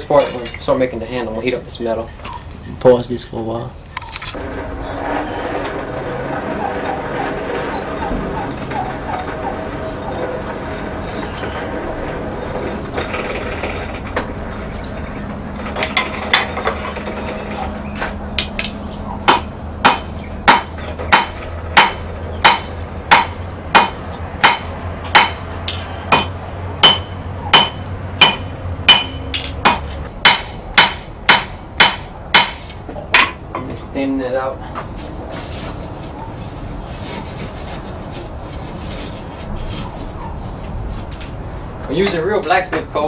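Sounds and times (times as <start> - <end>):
hammer striking steel on anvil: 18.4 - 33.4.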